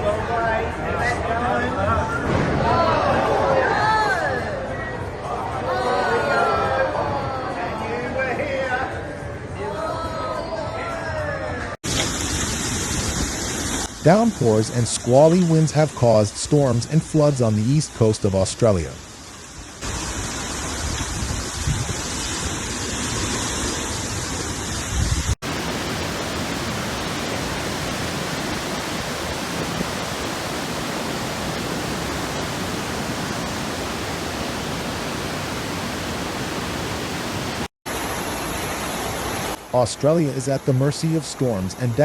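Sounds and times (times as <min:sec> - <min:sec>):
rushing water: 0:11.8 - 0:42.0.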